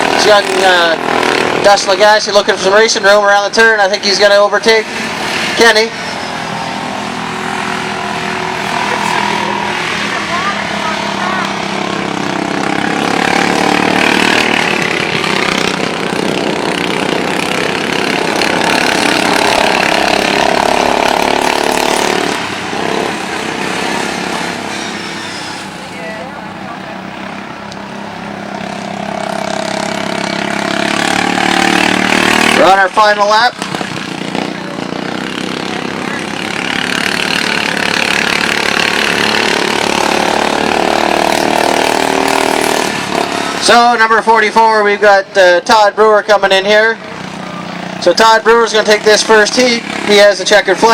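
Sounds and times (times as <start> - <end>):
racing lawn mower engines: 0.0 - 50.9.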